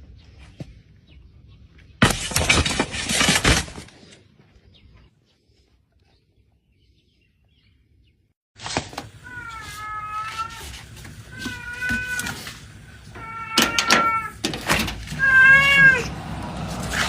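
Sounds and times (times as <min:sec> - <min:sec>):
cat meowing: 0:09.2 - 0:14.4, 0:15.1 - 0:16.1.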